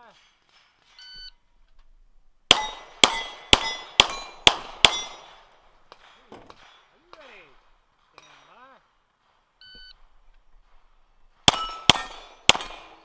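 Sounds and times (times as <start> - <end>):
pistol shots: 2.5 - 6.8, 11.4 - 13.0
bullets ringing on steel plates: 2.5 - 7.4, 11.5 - 13.0.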